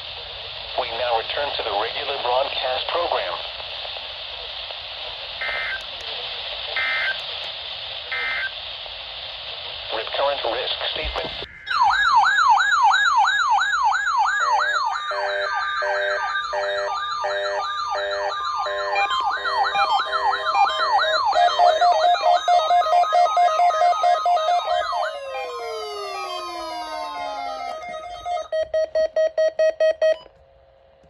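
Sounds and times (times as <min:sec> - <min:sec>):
yelping electronic siren: 0:05.4 - 0:05.8, 0:06.8 - 0:07.2, 0:08.1 - 0:08.5, 0:11.5 - 0:28.8
pulsing multi-tone beep: 0:15.1 - 0:30.3.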